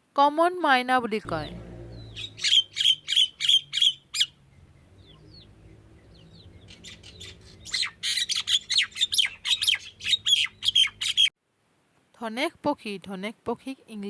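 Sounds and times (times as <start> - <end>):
faint bird chirps: 1.4 - 11.3
myna harsh squawks: 2.0 - 4.4.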